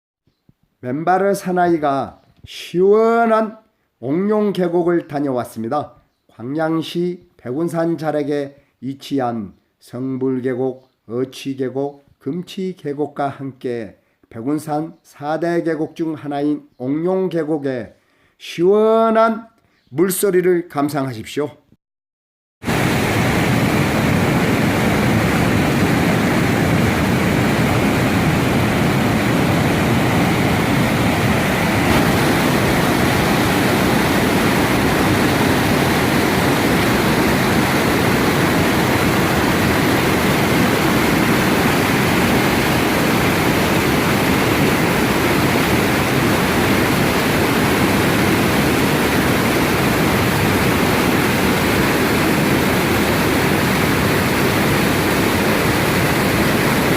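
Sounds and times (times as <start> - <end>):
stream rushing over rocks: 22.7 - 56.9.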